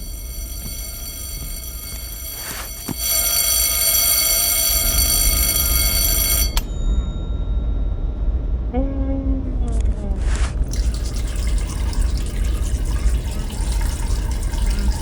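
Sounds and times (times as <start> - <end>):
high-pitched alarm-like ringing: 0.0 - 8.4
low rumble: 6.6 - 10.8.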